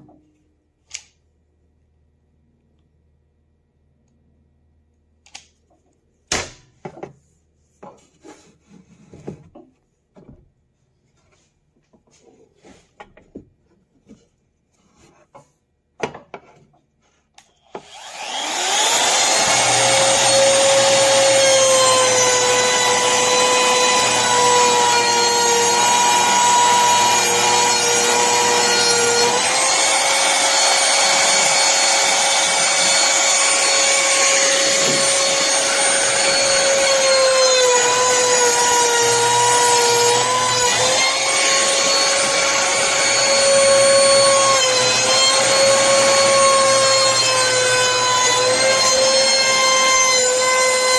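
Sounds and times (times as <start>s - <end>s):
wood router high whine: 17.7s - 50.9s.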